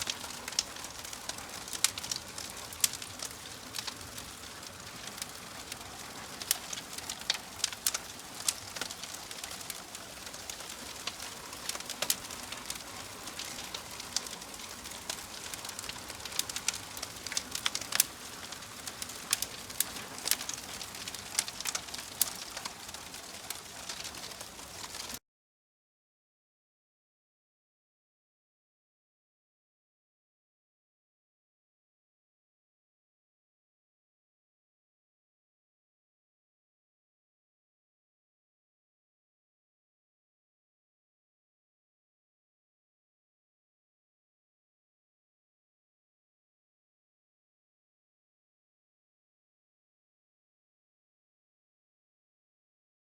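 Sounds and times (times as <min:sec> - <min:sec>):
fire crackling: 0:00.0 - 0:25.2
wood fire hissing: 0:00.0 - 0:25.2.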